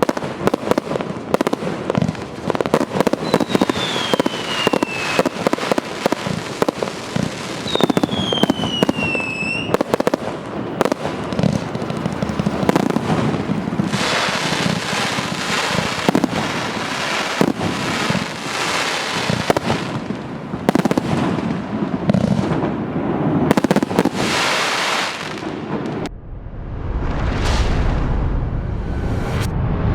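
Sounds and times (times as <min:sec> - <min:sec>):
crackling hiss of fireworks: 0:00.0 - 0:26.1
firework barrage launches and bursts: 0:00.0 - 0:26.1
whistling firework shell: 0:03.0 - 0:05.6, 0:07.6 - 0:10.0.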